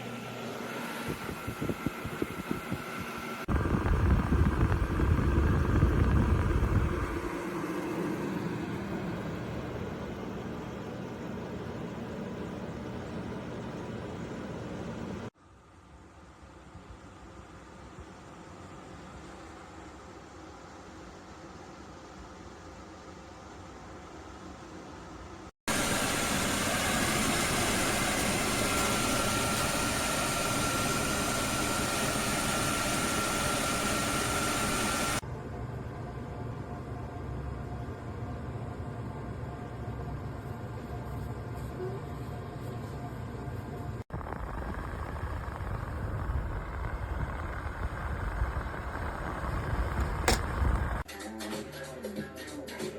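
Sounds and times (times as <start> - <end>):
dehumidifier fan rushing: 0.0 - 51.1
thin steady whine: 0.0 - 51.1.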